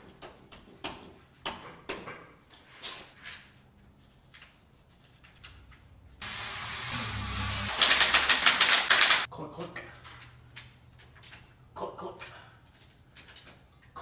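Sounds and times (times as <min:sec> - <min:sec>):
steady hiss: 0:06.2 - 0:09.3
rapid rattling: 0:06.8 - 0:09.3.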